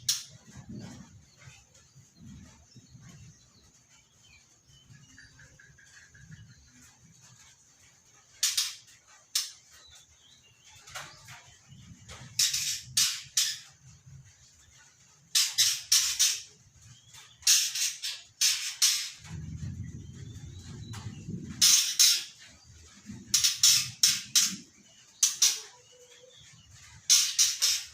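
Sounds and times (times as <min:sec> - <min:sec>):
bird rasping calls: 0:23.3 - 0:27.9.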